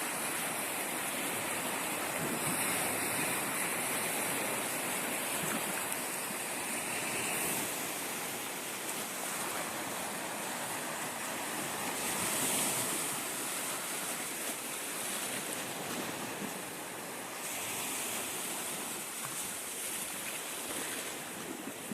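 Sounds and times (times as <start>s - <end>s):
waves washing onto shore: 0.0s - 21.9s.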